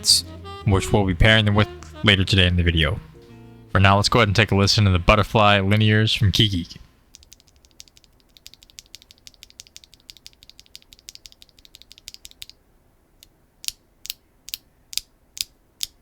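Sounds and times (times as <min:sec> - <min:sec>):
keyboard switches clacking: 0:07.2 - 0:12.5.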